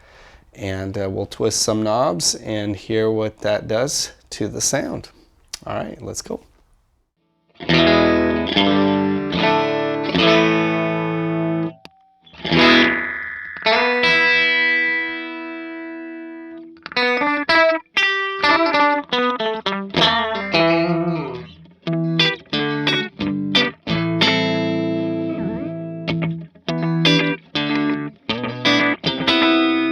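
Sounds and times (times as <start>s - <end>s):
overdriven electric guitar: 7.5s - 29.9s.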